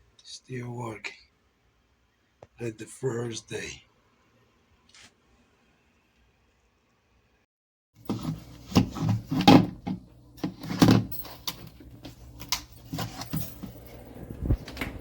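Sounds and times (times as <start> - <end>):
objects being handled and set down: 8.0 - 15.0.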